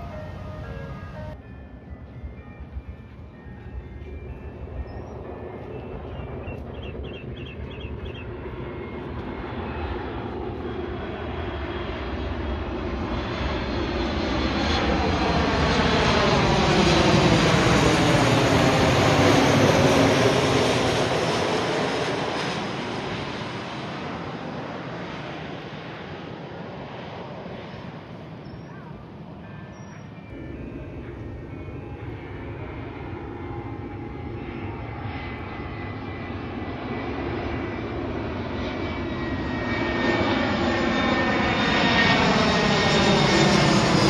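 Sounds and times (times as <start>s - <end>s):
jet airliner flying overhead: 0.0s - 44.0s.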